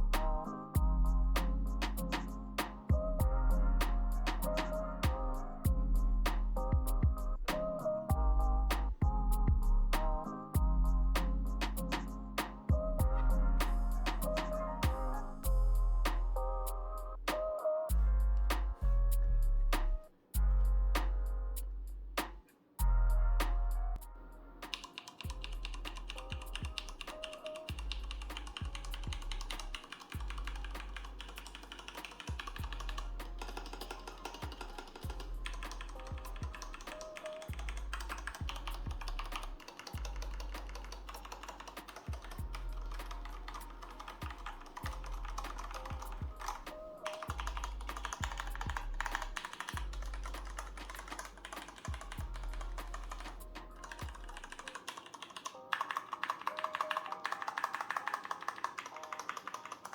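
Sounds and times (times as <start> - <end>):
beat with deep bass: 0.0 - 16.4, 17.3 - 21.4, 25.2 - 27.1, 27.7 - 54.6
mechanical keyboard typing: 24.6 - 59.9.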